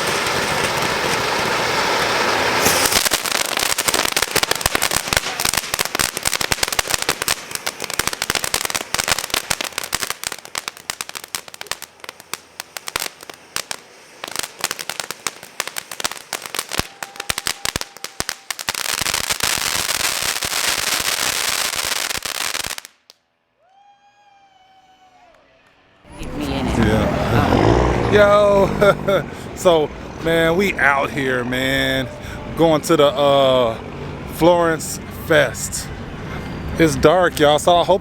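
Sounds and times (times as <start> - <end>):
steady hiss: 0.0 - 5.8, 6.6 - 19.3
firecrackers popping: 0.0 - 23.2, 26.2 - 32.2.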